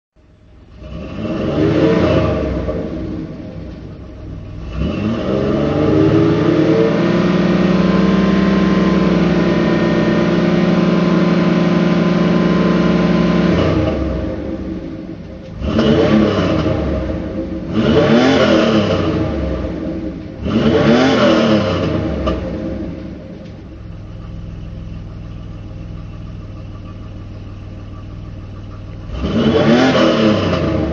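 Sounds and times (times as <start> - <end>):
knocking car engine revving: 0.2 - 30.9.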